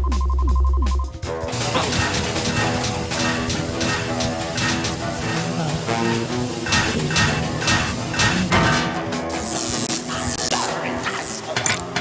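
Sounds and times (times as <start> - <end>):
cartoon background music: 0.0 - 12.0
sharp percussive hit: 1.5 - 9.2.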